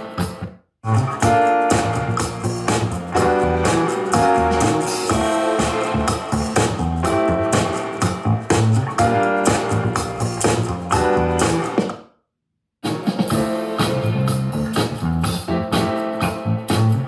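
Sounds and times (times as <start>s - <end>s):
music with steady beat from speaker: 0.0s - 11.9s, 12.9s - 17.0s.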